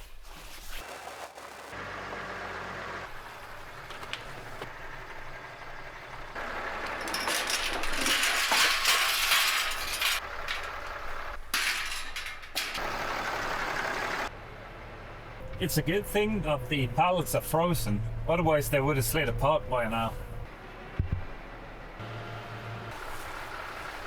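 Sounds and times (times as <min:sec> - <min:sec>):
tractor engine running: 0:00.9 - 0:24.0
wood and debris crunching: 0:03.1 - 0:14.3.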